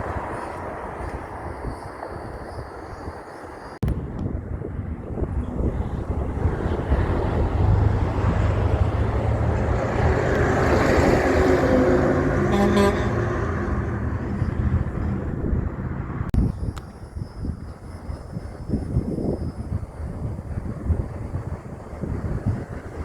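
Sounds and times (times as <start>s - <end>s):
heavy truck driving past: 4.8s - 16.3s.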